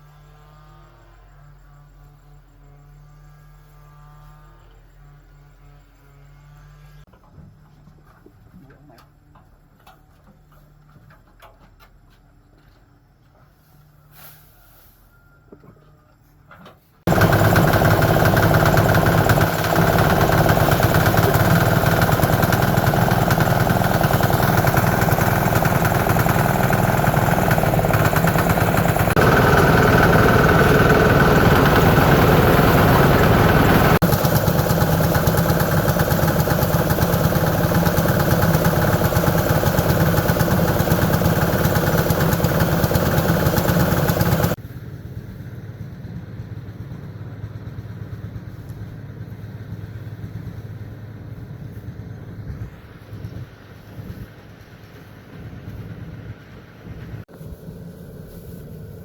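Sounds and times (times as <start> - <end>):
engine running loudly: 17.1 - 44.6.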